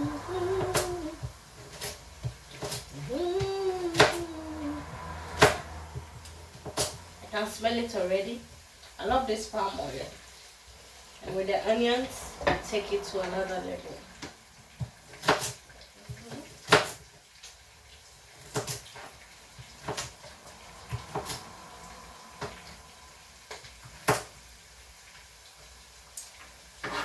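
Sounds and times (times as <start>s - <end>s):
kitchen utensils clattering: 26.8s - 27.0s.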